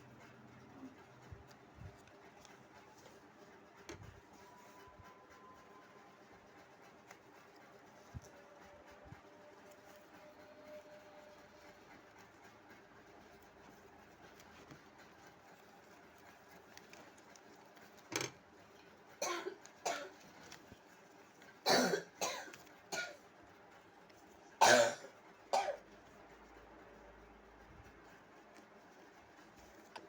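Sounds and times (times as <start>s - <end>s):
person coughing: 21.7s - 23.2s, 24.6s - 25.8s.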